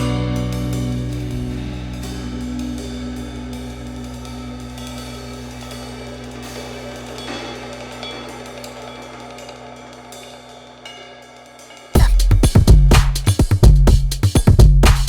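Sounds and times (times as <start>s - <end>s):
held low notes: 0.0s - 10.5s
cymbal and hi-hat hits: 0.0s - 15.0s.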